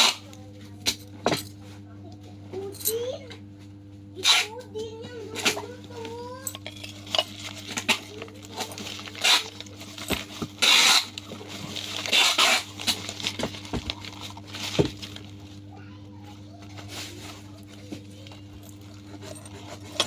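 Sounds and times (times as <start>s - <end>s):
packaging rustling and tearing: 6.9s - 15.6s.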